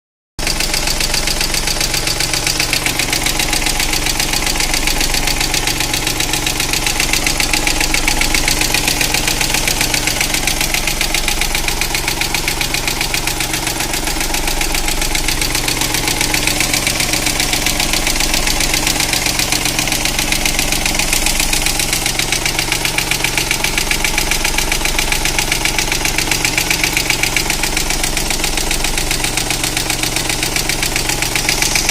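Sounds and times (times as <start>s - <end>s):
car engine idling: 0.4s - 31.9s
fast engine ticking: 0.4s - 31.9s.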